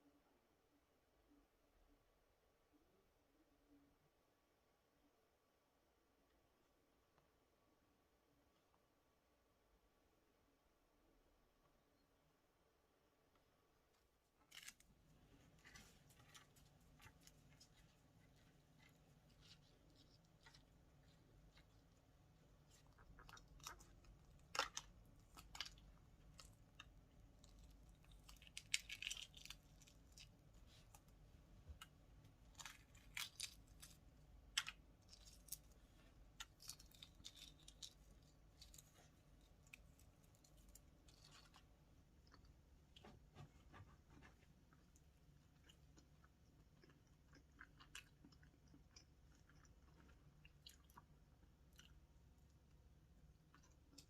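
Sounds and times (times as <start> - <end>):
food being chewed: 14.4 - 54.0.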